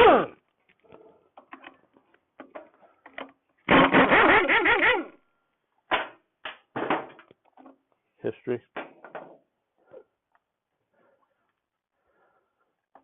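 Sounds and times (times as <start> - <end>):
pneumatic impact wrench hammering: 3.7 - 5.2.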